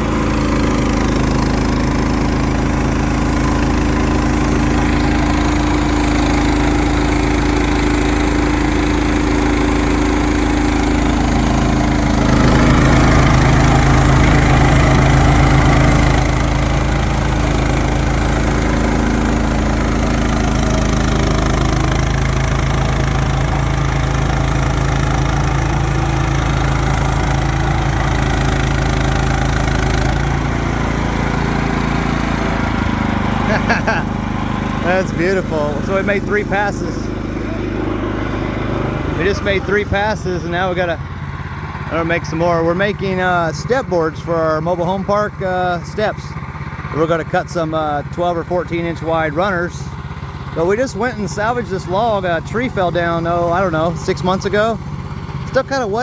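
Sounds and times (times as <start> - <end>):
band blade cutting log: 0.0 - 36.9
sawmill engine running: 0.0 - 56.0.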